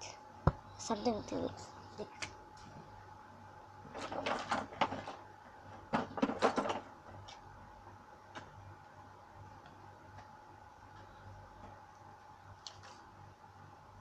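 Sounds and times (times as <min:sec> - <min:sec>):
faint steady hum: 0:00.0 - 0:14.0
objects clattering and knocking: 0:03.9 - 0:07.4.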